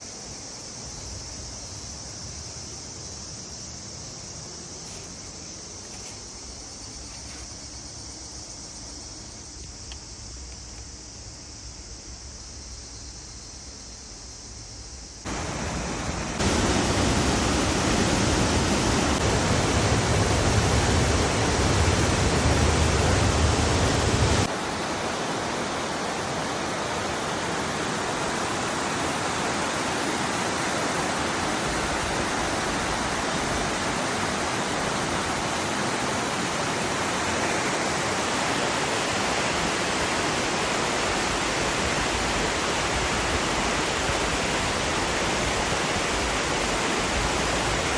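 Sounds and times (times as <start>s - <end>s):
waterfall roaring: 15.3s - 47.9s.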